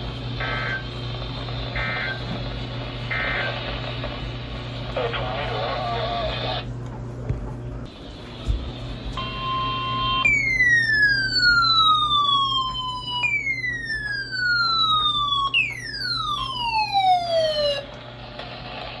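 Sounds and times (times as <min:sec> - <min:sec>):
steady alarm tone: 0:00.0 - 0:03.6, 0:09.1 - 0:17.9
electronic tones sweeping downward: 0:09.2 - 0:17.8.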